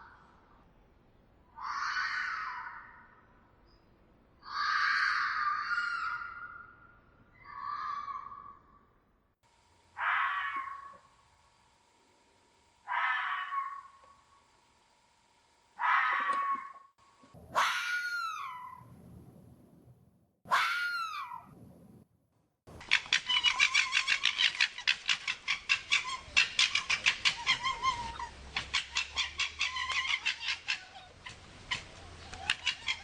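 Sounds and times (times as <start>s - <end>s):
fox calling: 1.5s - 3.2s, 4.4s - 6.8s, 10.0s - 11.1s, 12.8s - 14.1s, 15.8s - 18.9s, 20.5s - 21.5s, 22.7s - 33.0s
fox stuttering chatter: 22.7s - 33.0s.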